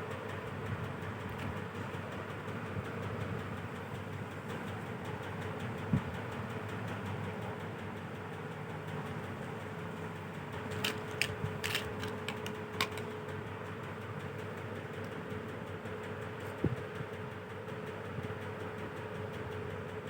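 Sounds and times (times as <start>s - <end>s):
background hum: 0.0s - 20.0s
plastic toy figures clicking: 10.7s - 13.1s.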